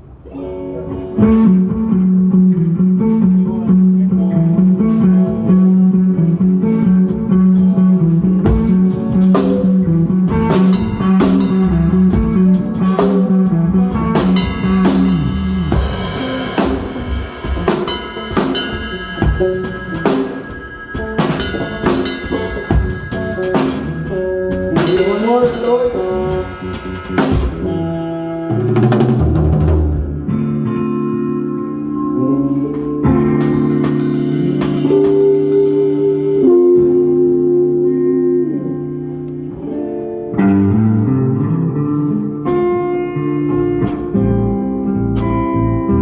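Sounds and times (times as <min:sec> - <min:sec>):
electric guitars: 0:00.0 - 0:46.0
instrumental rock band playing: 0:00.0 - 0:46.0
drum hits: 0:04.8 - 0:27.9, 0:28.5 - 0:30.3, 0:33.1 - 0:36.0.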